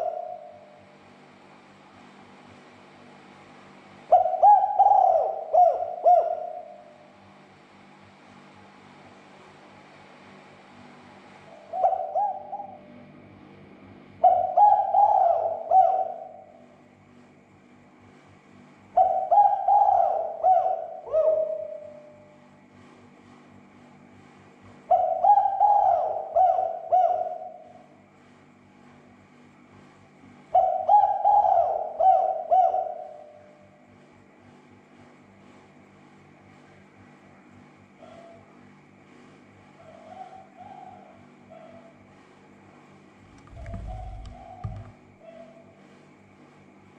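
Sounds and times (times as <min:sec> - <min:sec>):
dove cooing: 0:00.0 - 0:00.8, 0:04.1 - 0:07.0, 0:11.6 - 0:13.0, 0:14.2 - 0:16.7, 0:19.0 - 0:22.3, 0:24.9 - 0:28.0, 0:30.5 - 0:33.7, 0:39.8 - 0:42.0, 0:43.4 - 0:45.7
steady low hum: 0:00.0 - 0:46.9.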